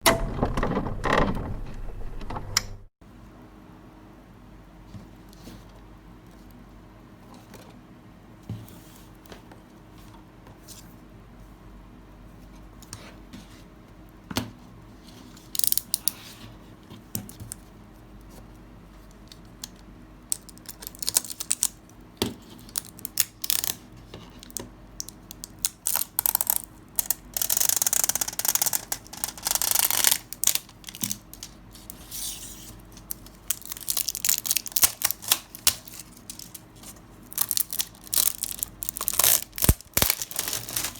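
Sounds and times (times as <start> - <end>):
cardboard and plastic rustling: 28.4 - 40.9.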